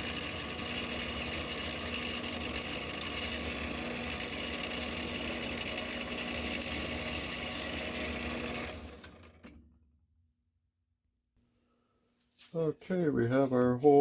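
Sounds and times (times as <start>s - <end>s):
drill spindle whining: 0.0s - 9.6s.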